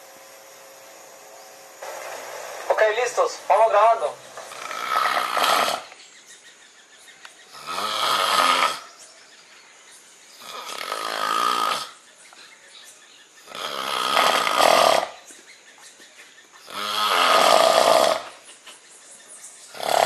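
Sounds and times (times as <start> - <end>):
man snoring loudly: 4.2 - 6.0, 7.5 - 8.9, 10.4 - 12.0, 13.4 - 15.2, 16.7 - 18.4, 19.7 - 20.0.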